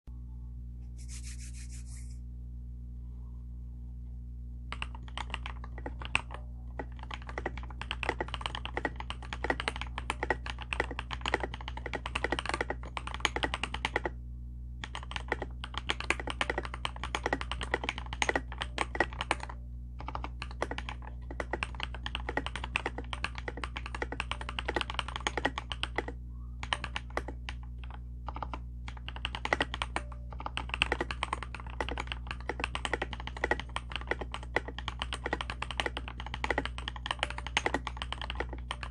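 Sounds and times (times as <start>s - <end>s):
low hum: 0.0s - 6.8s, 14.1s - 14.8s, 18.4s - 20.1s, 25.6s - 29.0s
mechanical keyboard typing: 4.7s - 14.1s, 14.8s - 38.9s.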